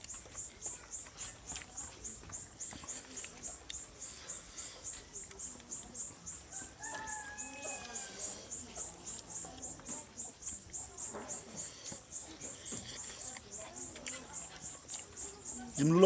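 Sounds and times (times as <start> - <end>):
insect chirping high-pitched: 0.0 - 16.0
drawn-out animal call: 6.0 - 9.4.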